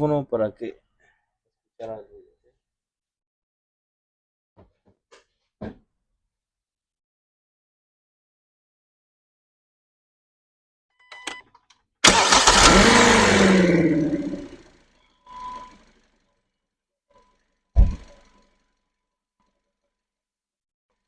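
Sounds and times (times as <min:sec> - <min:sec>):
car engine cranking and starting: 0:12.0 - 0:16.2, 0:17.8 - 0:18.6
sharp thump: 0:17.8 - 0:18.2.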